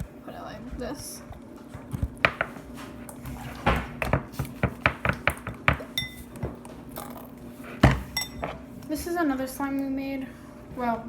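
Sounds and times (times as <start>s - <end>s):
bowls and utensils clinking: 5.7s - 8.7s.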